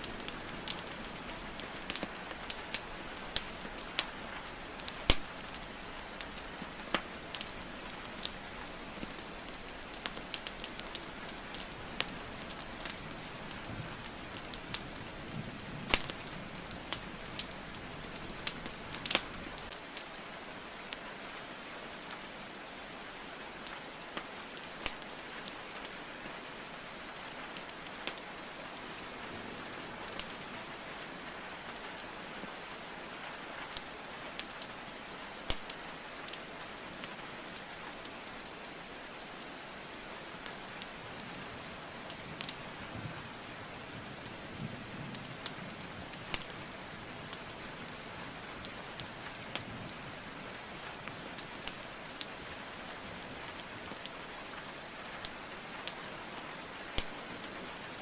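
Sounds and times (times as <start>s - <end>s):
wood fire crackling and popping: 0.0s - 21.0s, 23.6s - 25.8s, 27.5s - 29.2s, 33.6s - 38.3s, 42.0s - 43.5s, 44.2s - 58.0s
rain hiss: 0.0s - 58.0s.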